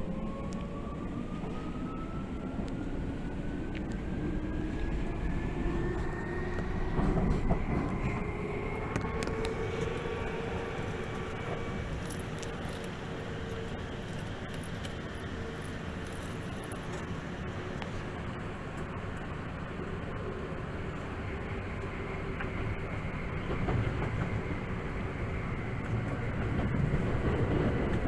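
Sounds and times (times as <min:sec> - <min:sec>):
traction motor whine: 0:00.0 - 0:20.4
train wheels rumbling on rail: 0:00.0 - 0:28.0.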